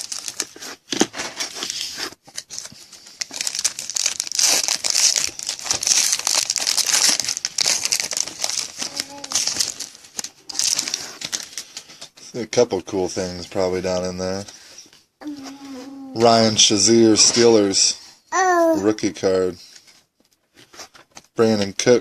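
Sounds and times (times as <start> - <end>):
card pack wrapper tearing and crinkling: 0.0 - 11.9.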